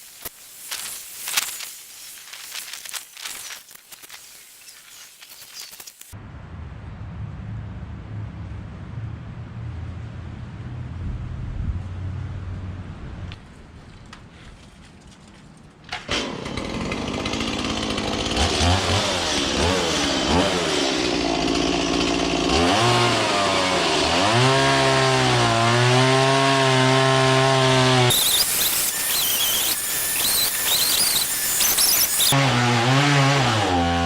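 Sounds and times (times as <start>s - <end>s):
chainsaw running: 16.0s - 34.0s.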